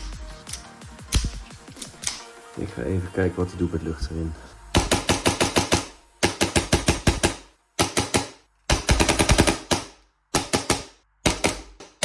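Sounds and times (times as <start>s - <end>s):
airsoft pistol firing rapid clacks: 4.8s - 12.0s.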